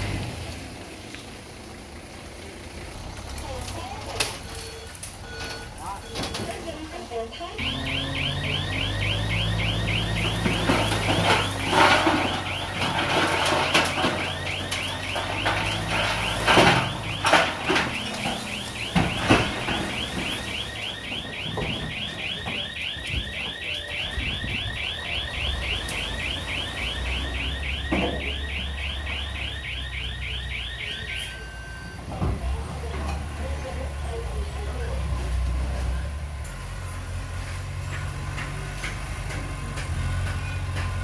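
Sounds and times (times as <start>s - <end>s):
electronic warning alarm chirping: 7.4s - 31.8s
diesel engine running: 7.6s - 30.8s.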